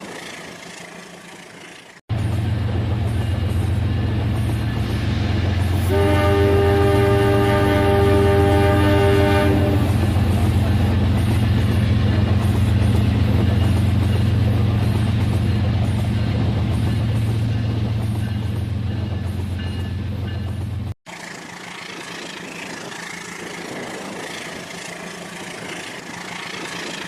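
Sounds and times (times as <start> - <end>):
toy train electronic horn: 5.9 - 9.9.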